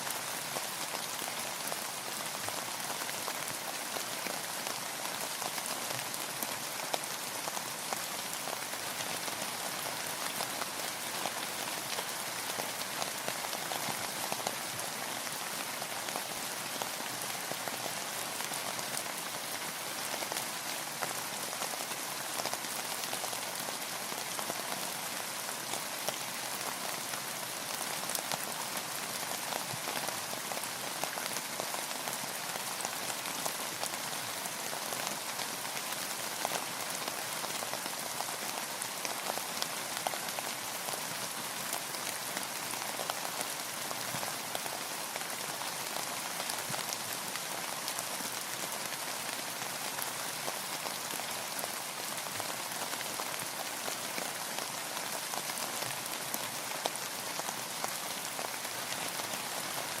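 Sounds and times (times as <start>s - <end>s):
steady rain falling: 0.0s - 60.0s.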